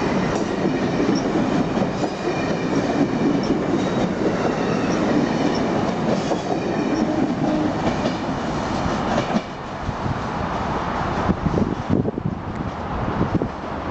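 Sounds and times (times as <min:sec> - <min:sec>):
train wheels clattering on rails: 0:00.0 - 0:10.0.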